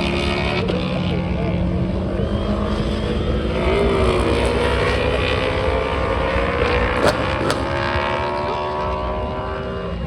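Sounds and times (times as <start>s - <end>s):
racing motorcycle engines: 0.0s - 10.0s
sharp engine pops: 7.0s - 7.8s.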